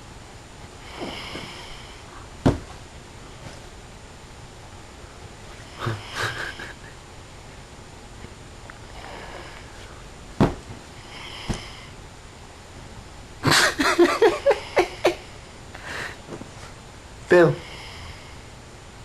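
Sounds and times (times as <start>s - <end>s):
man snoring: 5.6s - 6.8s.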